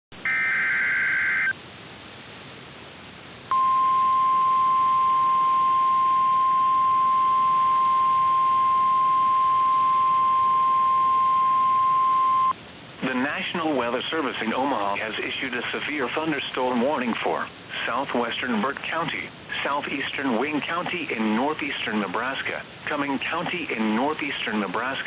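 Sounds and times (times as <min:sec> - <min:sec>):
data burst tones: 0:00.1 - 0:01.6
steady alarm tone: 0:00.2 - 0:01.6, 0:03.5 - 0:12.5
radio static hiss: 0:12.5 - 0:25.0.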